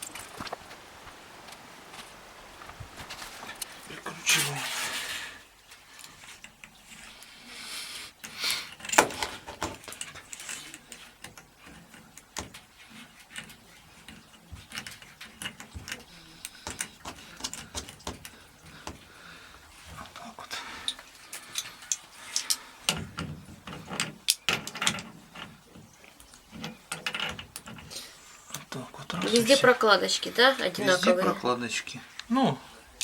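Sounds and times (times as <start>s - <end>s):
metal tap fittings clicking: 20.9s - 27.9s.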